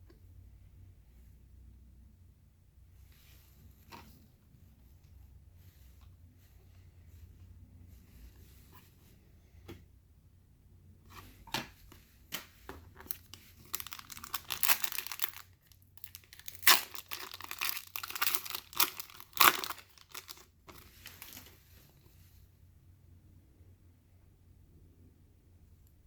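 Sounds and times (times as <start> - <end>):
wrapper crinkling and tearing: 13.0 - 21.5.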